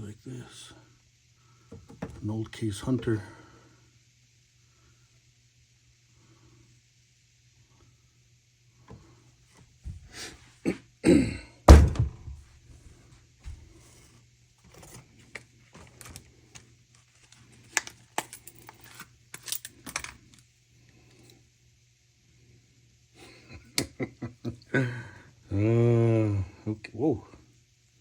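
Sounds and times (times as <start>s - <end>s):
heavy thuds: 11.7s - 12.4s.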